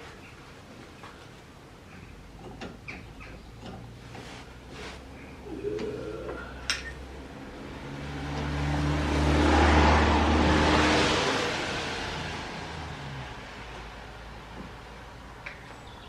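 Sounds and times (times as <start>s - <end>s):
vehicle passing by: 5.4s - 15.4s.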